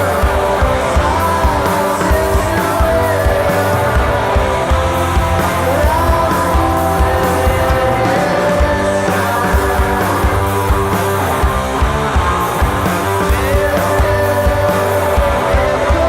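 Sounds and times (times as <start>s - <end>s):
bass guitar: 0.0s - 16.0s
distorted electric guitars: 0.0s - 16.0s
drums: 0.0s - 16.0s.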